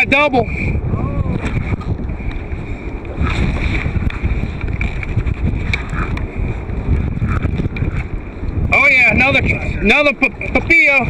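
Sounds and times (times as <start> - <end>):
wind buffeting microphone: 0.0 - 11.0
faint clicks and knocks: 3.8 - 6.3.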